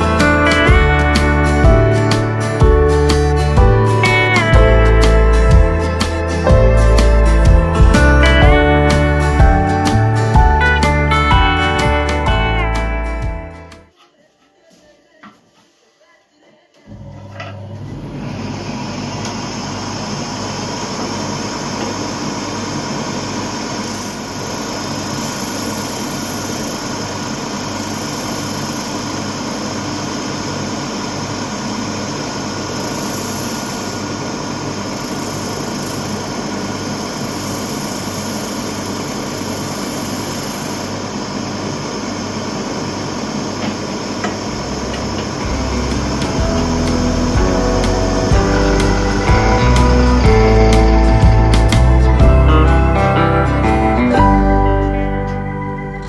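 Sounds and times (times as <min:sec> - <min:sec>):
electric motor running: 0:23.7 - 0:30.0, 0:32.6 - 0:41.1, 0:44.2 - 0:52.6.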